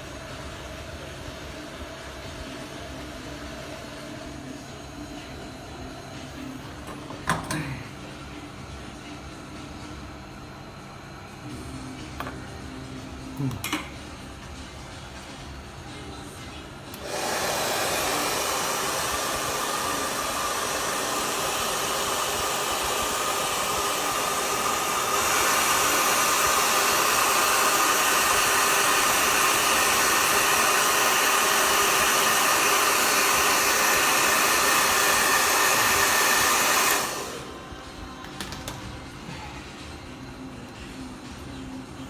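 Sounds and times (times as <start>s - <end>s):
hot air station blowing: 16.8s - 40.6s.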